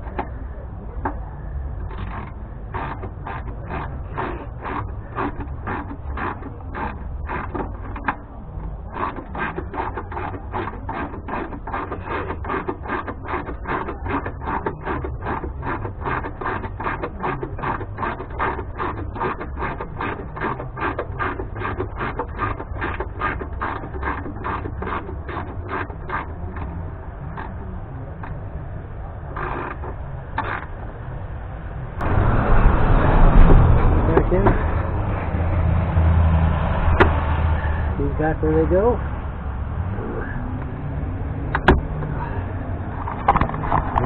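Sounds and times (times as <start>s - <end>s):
hand ratchet clicking: 8.9s - 26.7s.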